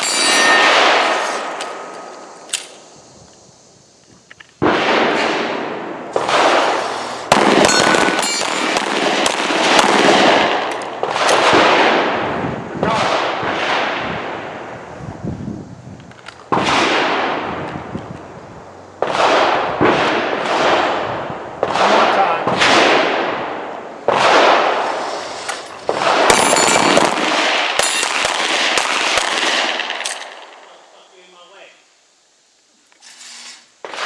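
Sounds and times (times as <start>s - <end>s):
handgun shots echoing: 7.3s - 11.6s, 25.5s - 30.6s.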